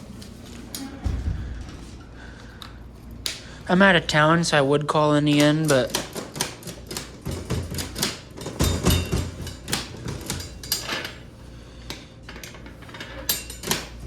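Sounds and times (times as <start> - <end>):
coins and vending machine clicking: 5.2 - 11.2, 12.3 - 14.0.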